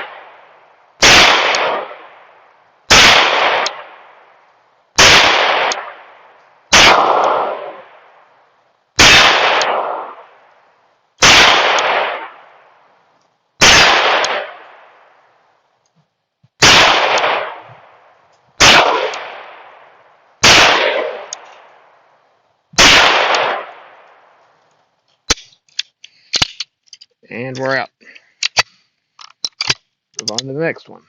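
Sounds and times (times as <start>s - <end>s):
pistol shots with echo: 1.0s - 4.2s, 5.0s - 8.2s, 9.0s - 10.4s, 11.2s - 12.6s, 13.6s - 15.0s, 16.6s - 17.7s, 18.6s - 21.4s, 22.8s - 24.0s.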